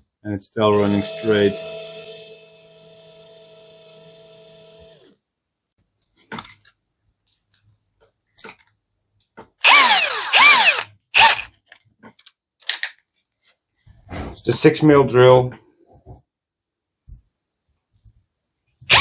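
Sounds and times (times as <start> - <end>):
cordless drill motor: 2.6 - 5.1, 9.6 - 11.5
drill clicks: 9.6 - 11.5
drill trigger bursts: 9.6 - 11.5.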